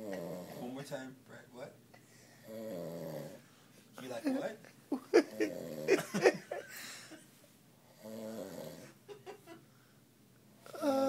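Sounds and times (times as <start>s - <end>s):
man snoring: 0.0s - 0.7s, 2.4s - 3.4s, 5.4s - 6.0s, 8.0s - 8.9s, 10.7s - 11.0s.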